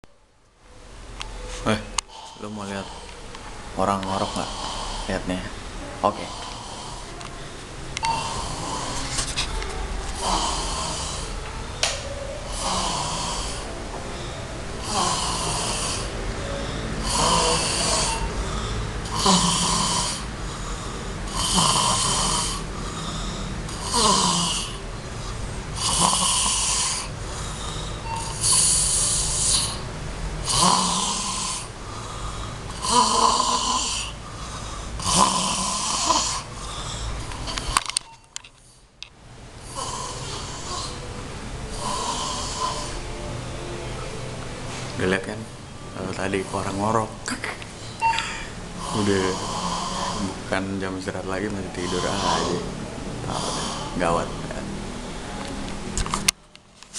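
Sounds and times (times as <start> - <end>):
man snoring loudly: 4.0 - 7.2, 8.0 - 9.2, 10.2 - 11.4, 12.5 - 24.8, 25.8 - 29.8, 30.4 - 37.1, 39.6 - 41.0, 41.7 - 43.2, 48.7 - 54.8.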